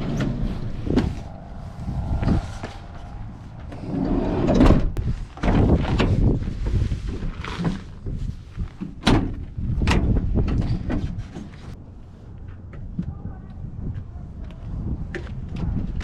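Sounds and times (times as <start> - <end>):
wind rumble on microphone: 0.0 - 16.0.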